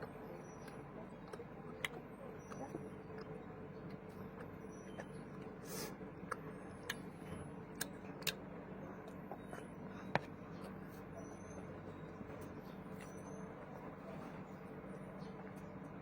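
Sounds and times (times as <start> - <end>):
sharp eating clicks and taps: 0.0 - 5.6, 7.7 - 10.8
faint steady hum: 0.0 - 16.0.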